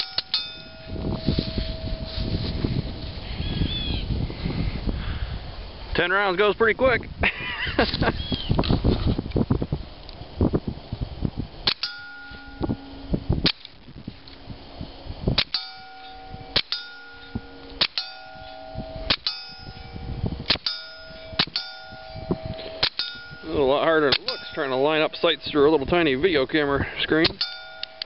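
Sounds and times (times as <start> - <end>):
steel plate ringing clang: 0.0 - 2.7, 11.7 - 13.4, 15.4 - 26.2, 27.4 - 28.0.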